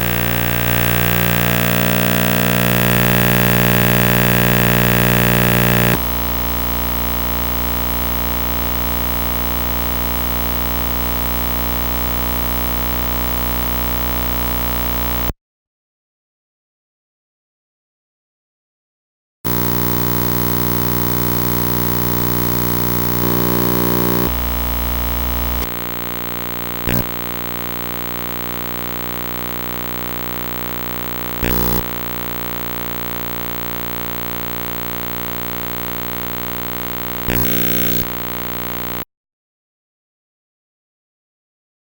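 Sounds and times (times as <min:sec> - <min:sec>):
buzzing electrical hum: 0:00.0 - 0:15.3, 0:19.5 - 0:39.0
tv static hiss: 0:00.0 - 0:15.3, 0:19.5 - 0:39.0
glitch bursts: 0:31.4 - 0:31.9.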